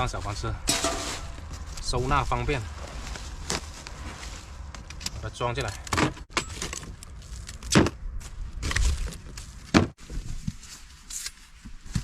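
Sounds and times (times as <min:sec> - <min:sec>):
charcoal lumps clattering: 0:00.1 - 0:02.0.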